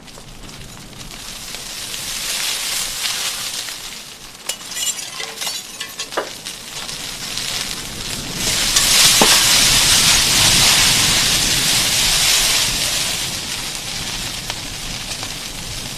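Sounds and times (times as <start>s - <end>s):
fire crackling: 0.0s - 15.9s
loud hiss of fire: 1.0s - 4.4s, 6.9s - 15.9s.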